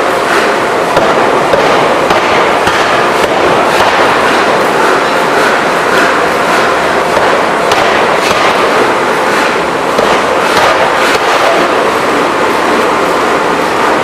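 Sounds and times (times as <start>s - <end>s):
loud machinery noise: 0.0s - 14.0s.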